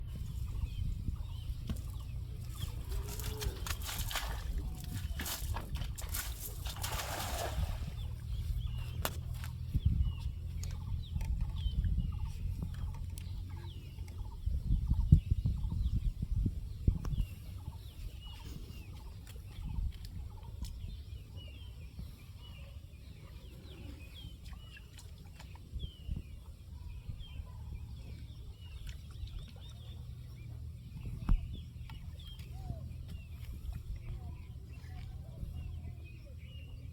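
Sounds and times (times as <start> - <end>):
steady low rumble: 0.0 - 21.2.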